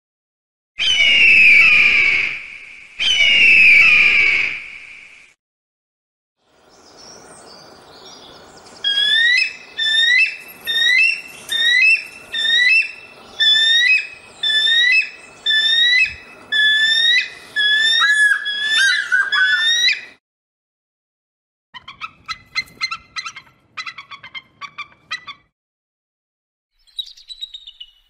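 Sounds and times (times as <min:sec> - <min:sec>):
eagle calling: 0:08.8 - 0:20.2.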